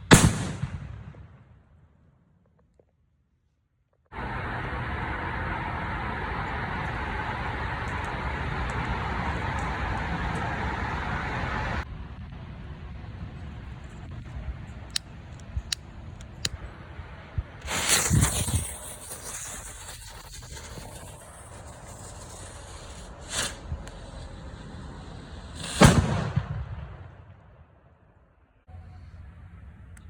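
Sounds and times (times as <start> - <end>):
firecrackers popping: 0.0 - 1.5, 4.2 - 11.8, 13.0 - 27.6.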